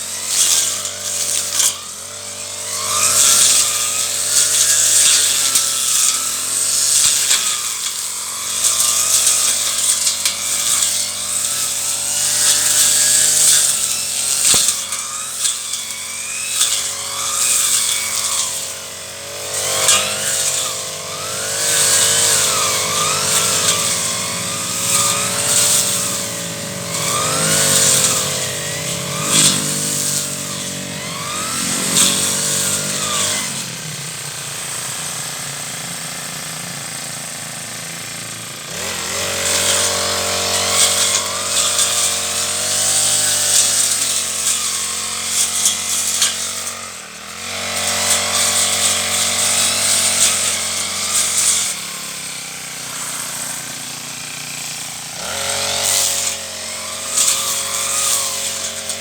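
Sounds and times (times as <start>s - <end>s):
brush cutter engine running: 0.0s - 59.0s.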